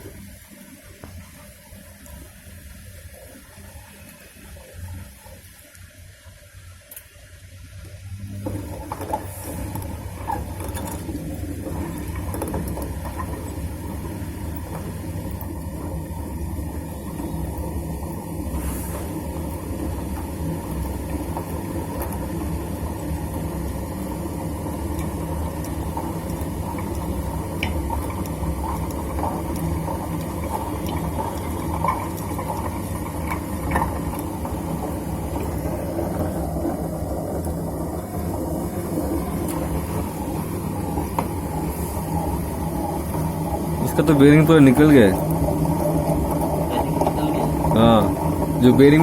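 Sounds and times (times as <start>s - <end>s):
washing machine rumbling: 7.7s - 49.0s.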